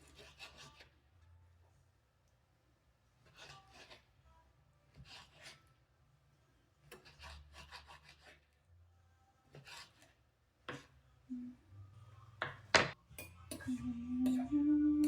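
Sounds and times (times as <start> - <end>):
knife sawing through chicken: 0.0 - 0.9, 3.2 - 4.1, 4.9 - 5.6, 6.9 - 8.5, 9.5 - 10.2.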